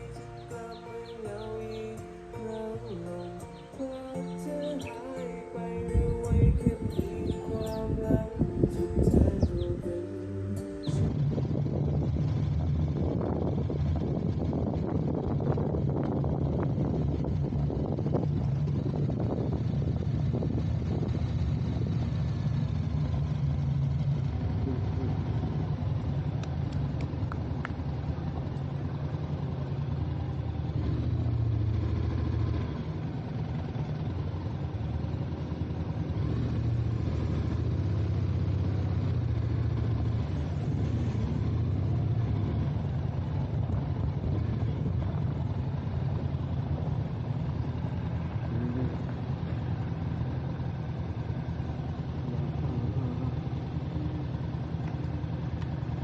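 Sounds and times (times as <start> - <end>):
vehicle engine droning: 0.0 - 56.0.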